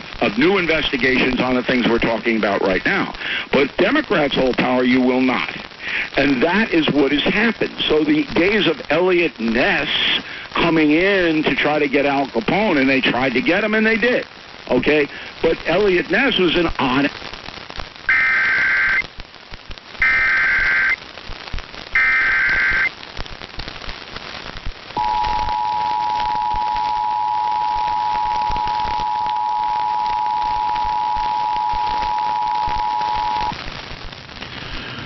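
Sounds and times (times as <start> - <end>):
radio static hiss: 0.0 - 35.0
shrill warbling data bursts: 22.0 - 22.9
steady two-tone alert signal: 25.0 - 33.5.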